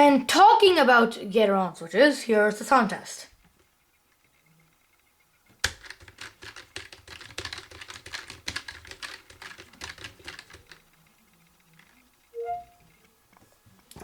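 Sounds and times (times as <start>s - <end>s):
fast typing on mechanical keyboard: 5.5s - 10.9s.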